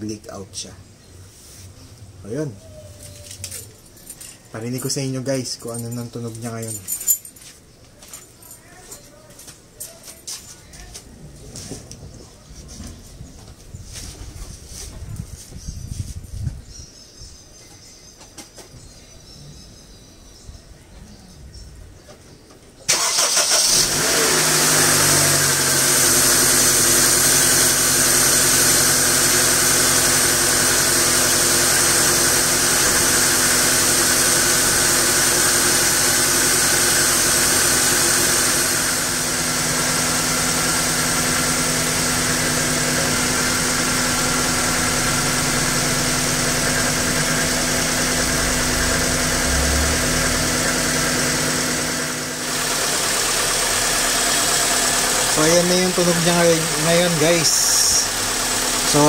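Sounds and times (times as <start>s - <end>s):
car engine starting and idling: 22.8s - 59.0s.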